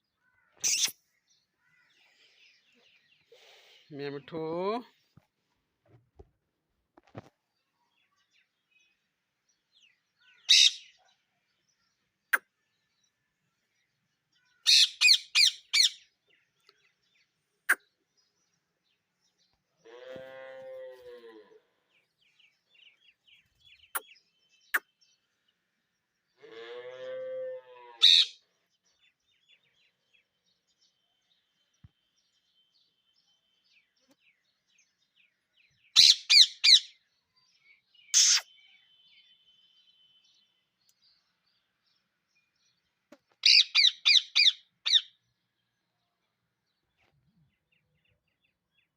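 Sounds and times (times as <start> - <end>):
parrots screeching: 0.6 - 1.0, 28.0 - 28.4, 38.2 - 38.4, 43.4 - 45.0
low drawn-out parrot calls: 26.4 - 28.4.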